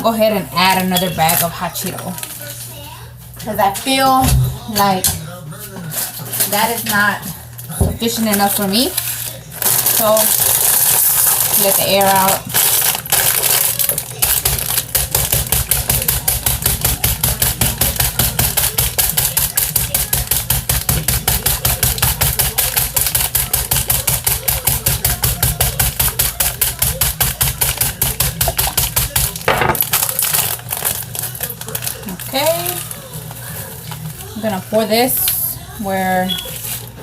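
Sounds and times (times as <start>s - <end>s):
chip bag being smashed: 8.1s - 34.4s.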